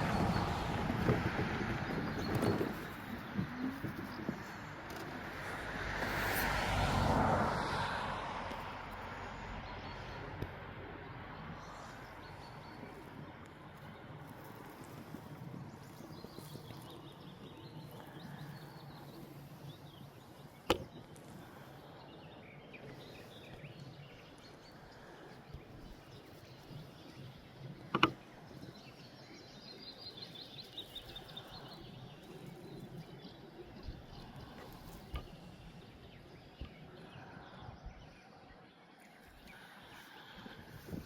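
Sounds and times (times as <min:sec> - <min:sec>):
songbirds singing trilled phrases: 0:09.2 - 0:41.0.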